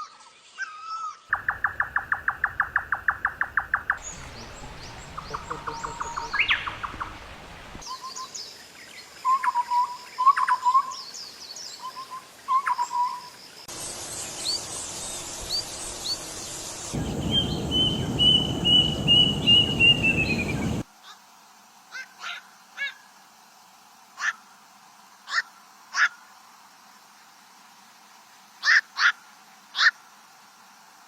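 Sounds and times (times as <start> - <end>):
faint high bird chirps: 0.0 - 21.2
low repeated bird calls: 0.5 - 8.3, 11.8 - 20.8
hiss: 13.2 - 20.9
rapid high bird notes: 16.9 - 20.8
low rumble: 17.0 - 20.8.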